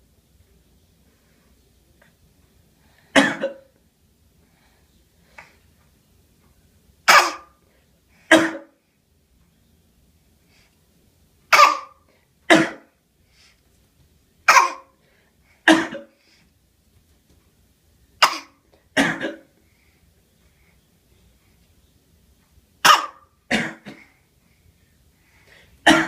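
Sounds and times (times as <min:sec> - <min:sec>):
baby fake coughing: 0:03.2 - 0:03.7, 0:07.1 - 0:07.6, 0:08.3 - 0:08.8, 0:11.5 - 0:12.9, 0:14.5 - 0:15.0, 0:15.7 - 0:16.1, 0:18.2 - 0:19.5, 0:22.8 - 0:24.1.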